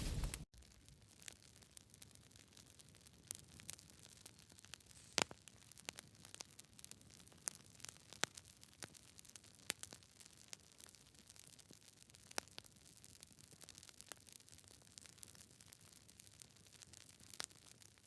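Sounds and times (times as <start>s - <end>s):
campfire crackling and popping: 0.0s - 0.4s.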